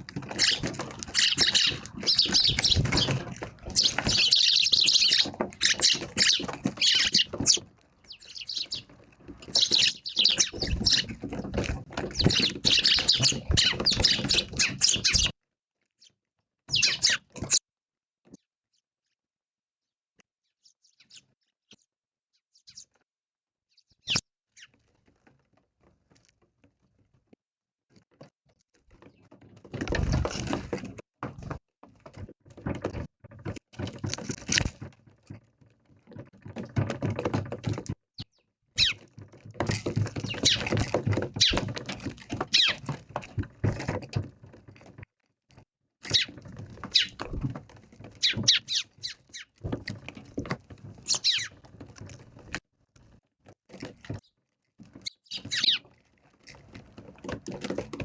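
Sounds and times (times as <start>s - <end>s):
birds pecking at food: 0.0s - 15.4s, 16.7s - 17.6s, 23.8s - 58.0s
bird chirps: 0.3s - 8.9s, 9.5s - 11.1s, 12.2s - 15.4s, 16.0s - 17.6s, 20.4s - 23.0s, 23.7s - 24.8s, 38.2s - 39.0s, 40.2s - 40.7s, 46.1s - 46.3s, 46.9s - 47.2s, 48.2s - 49.5s, 51.1s - 51.6s, 55.0s - 55.9s.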